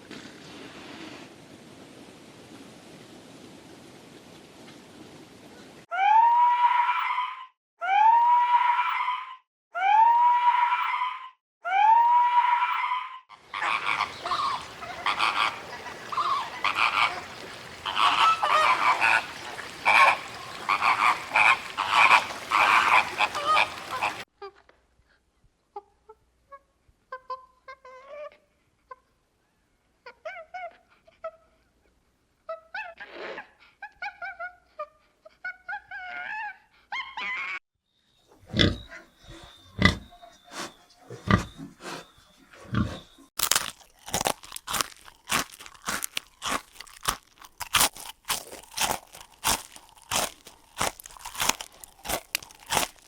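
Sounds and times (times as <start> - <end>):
honk-like animal calls: 6.0 - 24.2
long rising animal calls: 11.8 - 24.2.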